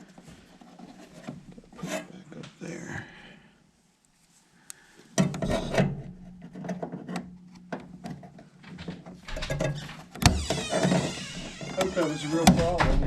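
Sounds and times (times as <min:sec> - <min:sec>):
sharp clicks and knocks: 0:05.2 - 0:13.0.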